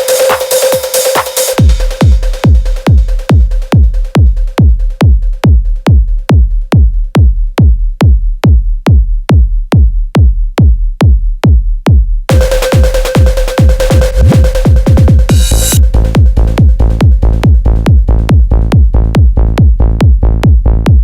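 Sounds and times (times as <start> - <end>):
hi-hats: 0.0 - 6.2, 12.3 - 17.5
techno kick drum: 0.0 - 21.0.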